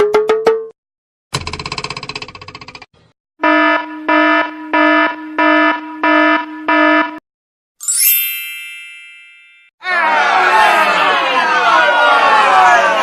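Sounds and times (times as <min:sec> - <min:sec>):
high bell-like chime: 0:07.8 - 0:09.7.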